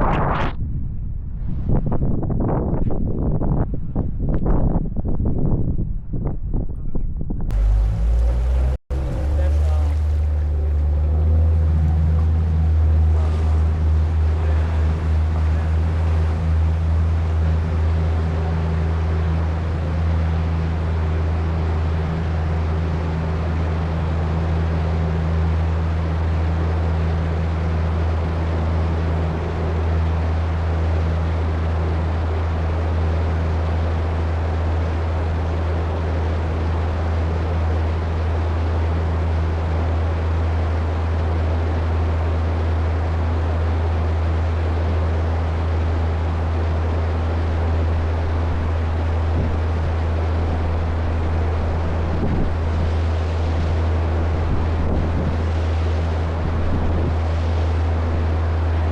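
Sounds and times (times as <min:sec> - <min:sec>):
wind rushing: 0:00.0 - 0:10.4
ferry engines humming: 0:07.5 - 0:58.9
water rushing: 0:07.5 - 0:58.9.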